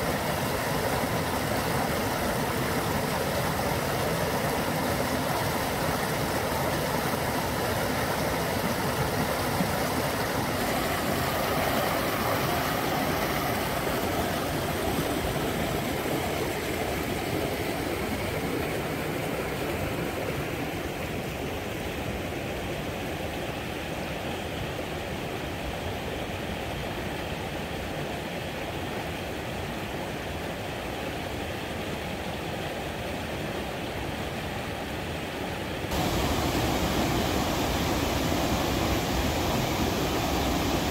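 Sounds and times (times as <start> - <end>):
river rapids rushing: 0.0 - 24.3, 27.8 - 40.9.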